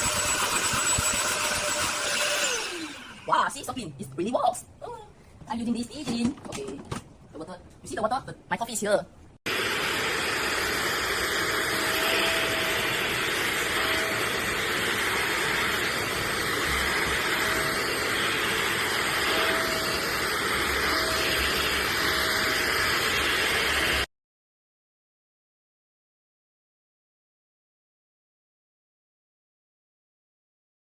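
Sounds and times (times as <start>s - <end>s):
vacuum motor suction: 0.0s - 3.5s, 9.5s - 24.1s.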